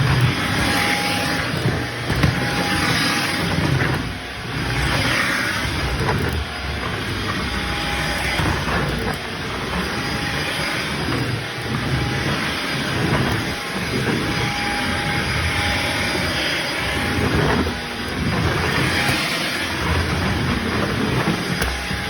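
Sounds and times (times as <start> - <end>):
debris crunching in vacuum: 0.0 - 22.0
vacuum cleaner running: 0.0 - 22.0.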